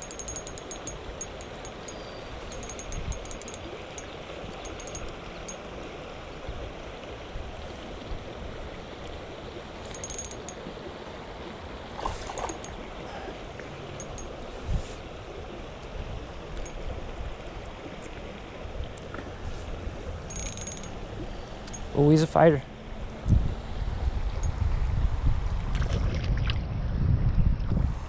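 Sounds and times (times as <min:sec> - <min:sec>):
high-pitched clicking: 0:00.0 - 0:05.2, 0:09.9 - 0:10.6, 0:12.5 - 0:12.8, 0:14.0 - 0:14.3, 0:20.3 - 0:21.0, 0:21.7 - 0:21.9
creek water rushing: 0:00.0 - 0:24.4.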